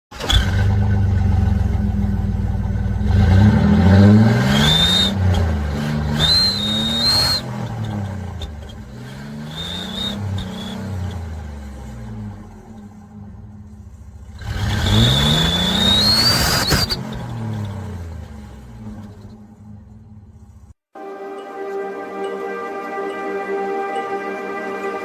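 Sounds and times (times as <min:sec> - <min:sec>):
car engine revving: 0:00.1 - 0:20.7
high turbo whistle: 0:04.4 - 0:05.4, 0:06.1 - 0:07.5, 0:09.6 - 0:10.8, 0:14.9 - 0:17.1, 0:21.0 - 0:25.0.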